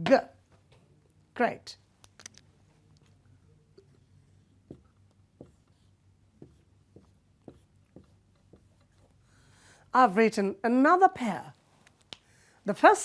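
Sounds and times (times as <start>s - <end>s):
low room hum: 0.0s - 13.0s
marker tapping and scraping on whiteboard: 3.8s - 9.2s.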